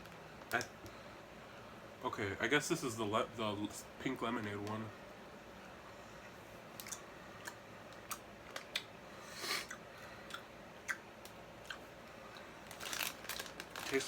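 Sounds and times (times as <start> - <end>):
chewing clicks and smacks: 9.7 - 12.5.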